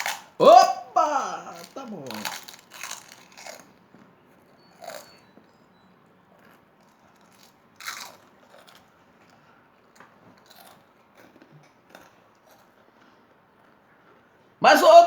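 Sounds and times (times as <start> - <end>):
person chewing crunchy food: 0.0 - 3.8, 4.8 - 5.2, 6.4 - 13.8.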